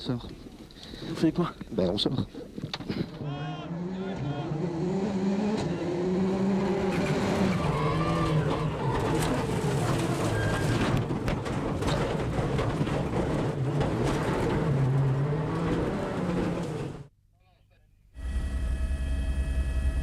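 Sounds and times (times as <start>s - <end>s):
car engine at low wavering revs: 3.5s - 10.2s.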